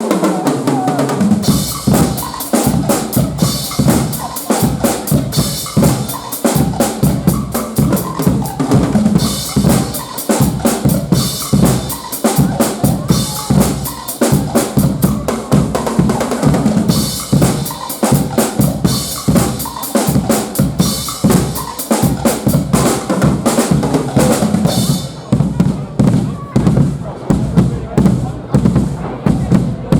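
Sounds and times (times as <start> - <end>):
carnival band playing: 0.0 - 29.9
pounding bass drum: 0.0 - 29.9.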